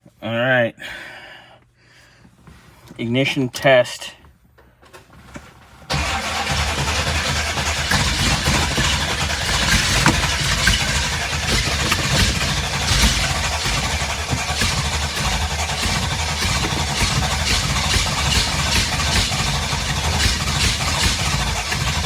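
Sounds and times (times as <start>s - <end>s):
starter cranking engine: 5.9s - 22.0s.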